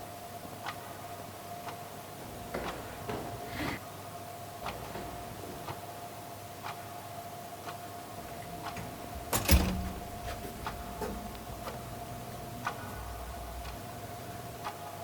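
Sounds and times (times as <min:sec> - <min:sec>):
clock ticking: 0:01.6 - 0:03.6, 0:04.6 - 0:05.8, 0:06.6 - 0:06.8, 0:07.6 - 0:14.9.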